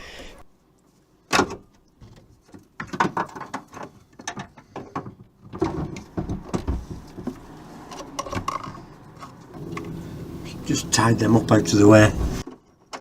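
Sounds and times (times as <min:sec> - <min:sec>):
heavy thumps: 0:09.6 - 0:12.4.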